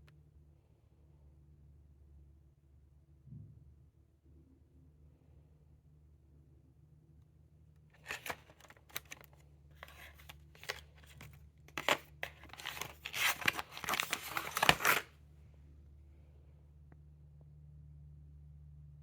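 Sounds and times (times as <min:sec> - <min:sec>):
packaging tearing and crinkling: 0:08.0 - 0:15.1.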